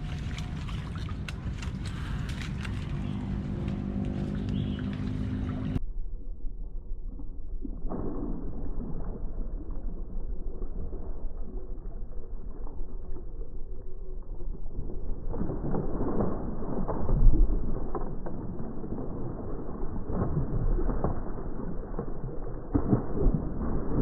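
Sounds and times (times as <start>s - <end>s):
wind buffeting microphone: 0.0s - 5.8s.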